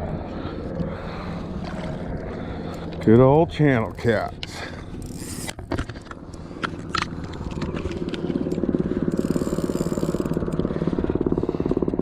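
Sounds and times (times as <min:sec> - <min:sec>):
motor running with fast pulse: 0:04.6 - 0:12.0.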